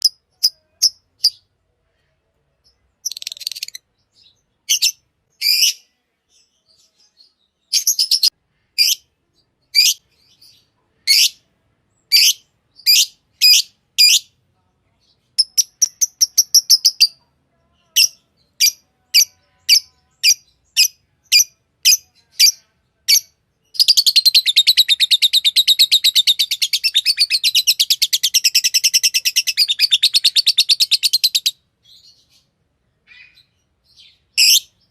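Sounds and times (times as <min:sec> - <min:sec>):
lovebird chirping: 0:00.0 - 0:01.5, 0:02.6 - 0:14.3, 0:15.1 - 0:17.2, 0:17.9 - 0:34.9
lovebird chattering song: 0:03.0 - 0:03.8, 0:15.4 - 0:17.2, 0:18.0 - 0:32.2.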